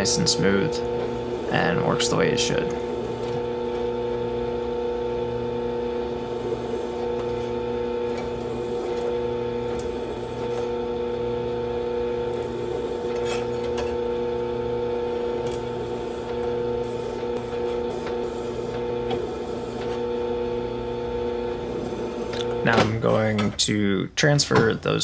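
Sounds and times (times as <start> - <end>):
drill cutting steel: 0.0 - 23.1.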